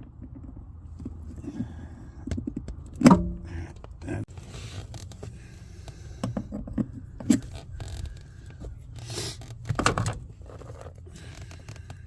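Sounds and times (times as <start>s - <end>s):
parts knocking and scraping: 2.2s - 11.7s.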